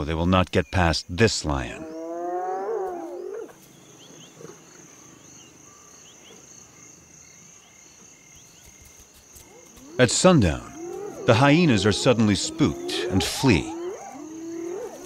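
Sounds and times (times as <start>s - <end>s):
insect trill: 0.0s - 15.0s
faint chirps: 2.9s - 15.0s
hyena call: 9.4s - 15.0s.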